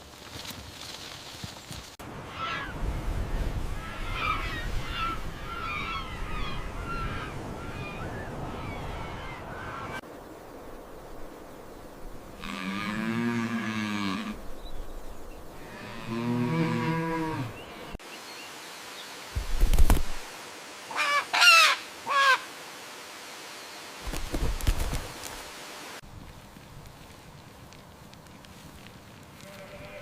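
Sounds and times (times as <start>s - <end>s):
cattle mooing: 15.6s - 17.6s.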